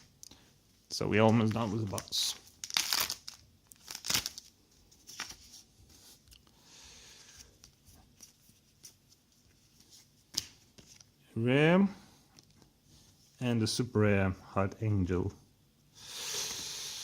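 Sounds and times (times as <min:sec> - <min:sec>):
cards and wrappers rustling: 0:01.1 - 0:06.3.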